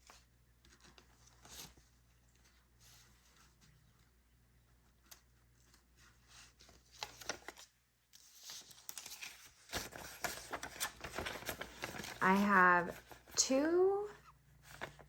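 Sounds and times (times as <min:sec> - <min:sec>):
paper bills rustling: 0:04.8 - 0:13.8, 0:14.6 - 0:15.0.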